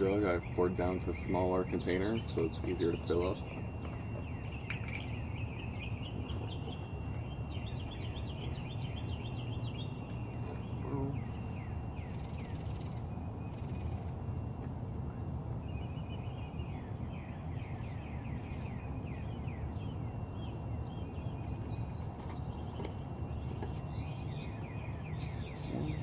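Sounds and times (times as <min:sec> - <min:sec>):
birds chirping and trilling: 0:00.0 - 0:26.0.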